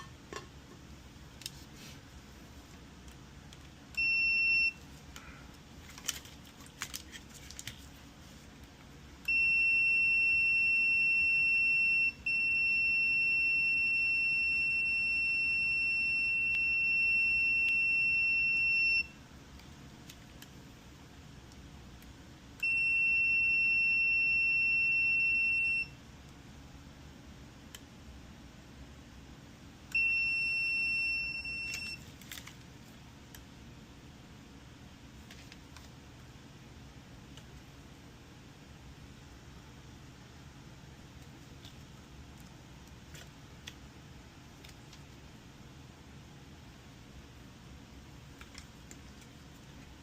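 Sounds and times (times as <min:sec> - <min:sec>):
multimeter continuity beeps: 0:03.9 - 0:04.9, 0:09.2 - 0:19.2, 0:22.6 - 0:26.0, 0:29.9 - 0:32.1.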